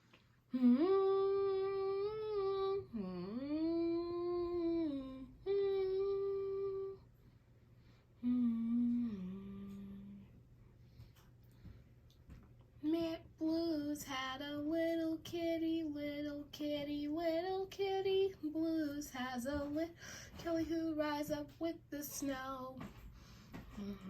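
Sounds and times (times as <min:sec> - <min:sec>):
person humming a tune: 0:00.5 - 0:07.1, 0:08.2 - 0:10.3.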